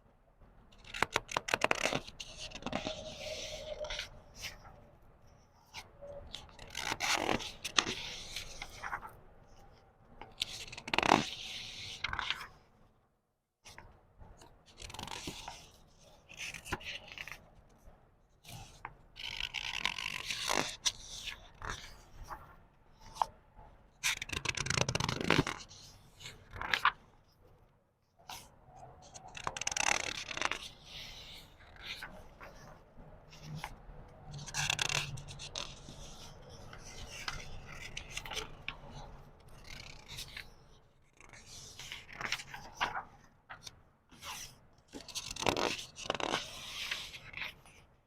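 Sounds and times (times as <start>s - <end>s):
book pages turning: 0.8s - 4.8s, 5.6s - 12.6s, 13.6s - 17.5s, 18.4s - 23.3s, 24.0s - 27.1s, 28.3s - 47.8s.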